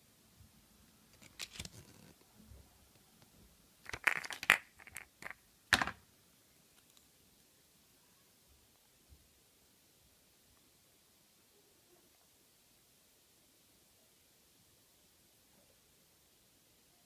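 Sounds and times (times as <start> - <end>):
packaging rustling: 1.2 - 2.2
plastic toys clicking and rattling: 3.9 - 6.0.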